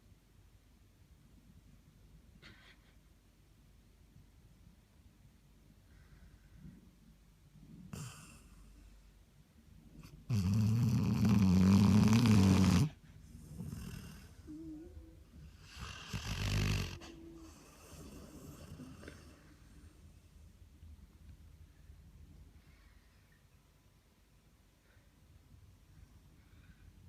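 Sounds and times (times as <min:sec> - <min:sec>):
dog snoring: 0:07.9 - 0:08.7, 0:10.0 - 0:19.4.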